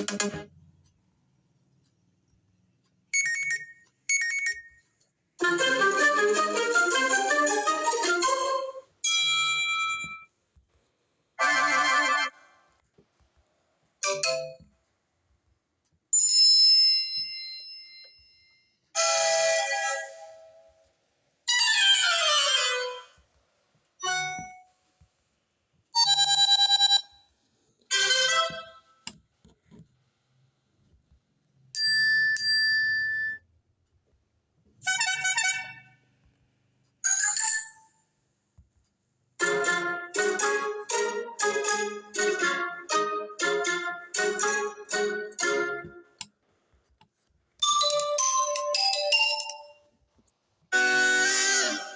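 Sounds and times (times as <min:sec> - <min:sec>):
electronic alert chimes: 0:03.2 - 0:04.8.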